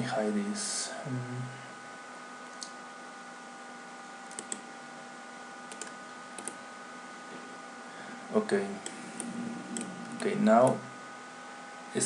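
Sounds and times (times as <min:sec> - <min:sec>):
faint electrical hum: 0:00.0 - 0:12.0
computer mouse clicks: 0:04.3 - 0:04.7, 0:05.7 - 0:06.6, 0:08.8 - 0:10.8.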